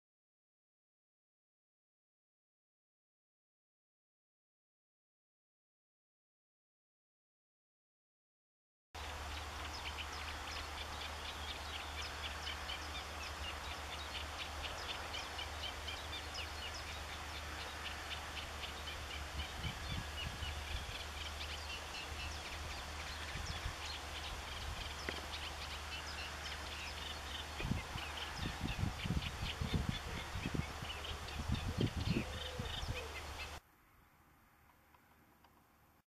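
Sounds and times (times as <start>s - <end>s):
songbirds twittering: 9.0s - 35.5s.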